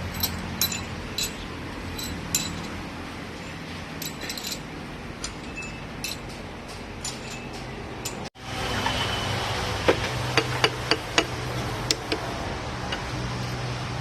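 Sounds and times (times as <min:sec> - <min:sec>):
metal parts clinking: 0:00.0 - 0:08.3.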